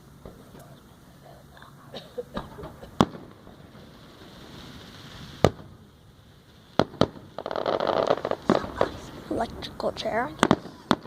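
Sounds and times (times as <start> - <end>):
faint hiss: 0.0 - 11.0
loud firework bangs: 2.2 - 11.0
small firework pops: 2.4 - 5.8, 6.8 - 9.1, 10.4 - 11.0.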